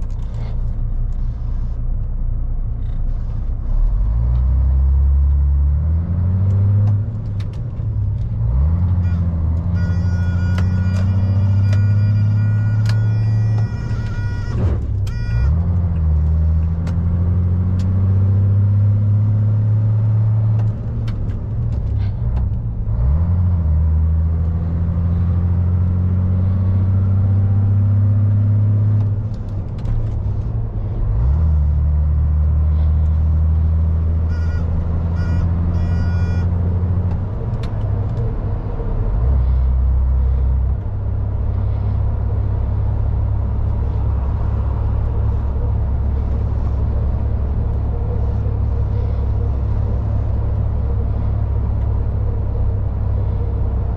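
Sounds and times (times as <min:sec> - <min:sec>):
diesel lorry engine under load: 0:00.0 - 0:53.9.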